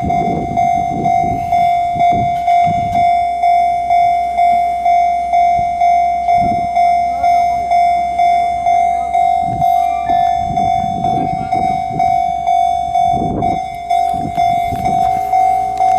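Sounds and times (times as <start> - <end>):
level crossing bell ringing: 0.0 - 15.9
low rumbling: 0.0 - 15.9.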